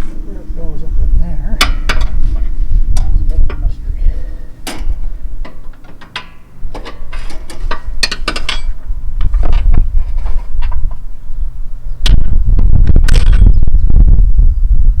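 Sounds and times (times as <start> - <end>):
low rumble: 0.0 - 5.6, 7.7 - 15.0
metal tools clicking and knocking: 4.6 - 9.7.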